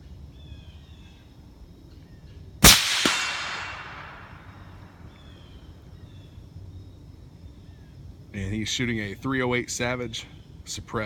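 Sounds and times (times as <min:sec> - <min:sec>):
suppressed rifle shot: 0:02.6 - 0:04.7
long rolling echo: 0:02.6 - 0:05.0.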